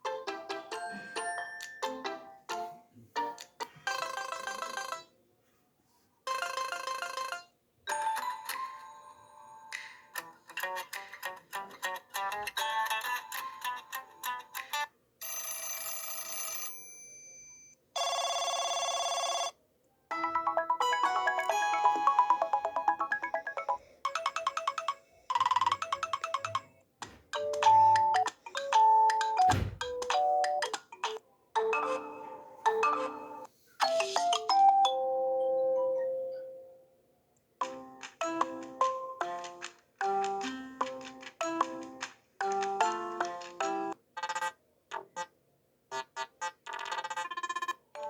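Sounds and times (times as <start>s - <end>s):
plucked ringtone melody: 0.0s - 5.1s, 20.1s - 26.7s, 27.4s - 30.8s, 31.6s - 36.8s
melodic ringtone: 0.0s - 5.2s, 6.3s - 10.0s, 11.6s - 26.7s, 27.4s - 30.8s, 31.6s - 36.8s, 38.2s - 44.6s, 46.7s - 48.0s.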